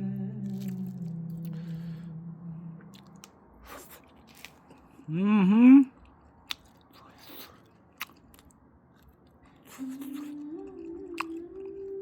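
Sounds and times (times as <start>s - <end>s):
person humming mmm: 0.0s - 3.3s, 9.7s - 12.0s
chewing crispy food: 0.4s - 1.8s, 2.9s - 5.0s, 6.0s - 12.0s.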